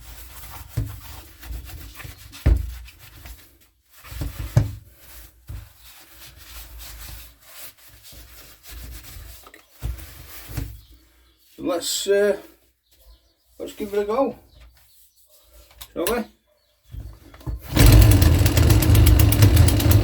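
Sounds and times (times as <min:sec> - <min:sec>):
rubbing and scrubbing by hand: 0:00.0 - 0:11.6.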